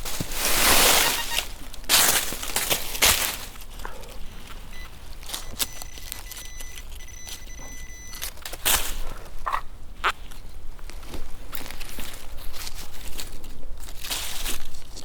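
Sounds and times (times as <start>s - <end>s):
rustling in leaf litter: 0.0s - 6.5s, 10.2s - 15.0s
metal detector tone: 0.9s - 1.6s, 4.7s - 8.4s.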